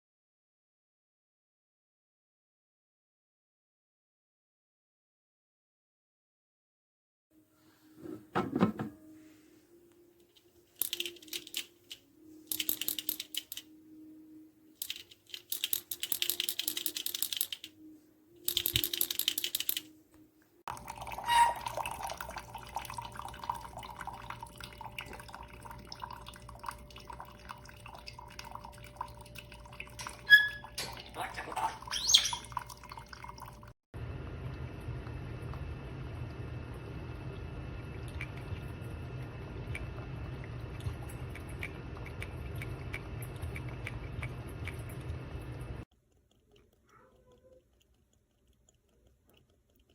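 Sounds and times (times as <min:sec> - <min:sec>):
coffee maker humming: 0:08.0 - 0:09.0, 0:20.7 - 0:29.7, 0:34.0 - 0:45.8
small clicks: 0:10.3 - 0:13.7, 0:14.8 - 0:17.7, 0:18.4 - 0:19.9
coffee maker water hissing: 0:20.7 - 0:30.6, 0:34.3 - 0:45.8.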